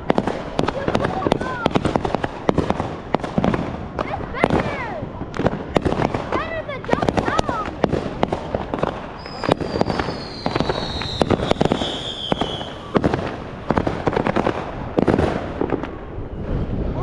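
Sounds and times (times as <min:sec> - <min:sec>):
fireworks bangs and crackles: 0:00.0 - 0:17.0
shrill descending whistle: 0:09.3 - 0:12.8.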